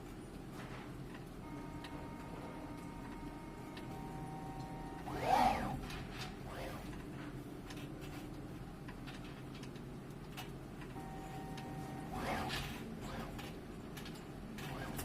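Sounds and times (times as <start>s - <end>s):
machine humming: 1.4s - 7.2s, 10.9s - 15.0s
motor whirring: 4.5s - 7.0s, 11.5s - 13.6s.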